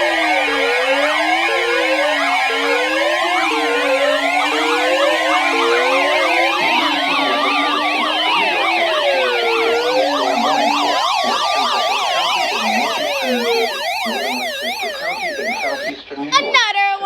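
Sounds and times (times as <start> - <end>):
siren fast yelping sweeps: 0.0 - 15.9
siren slow wail: 0.0 - 16.0.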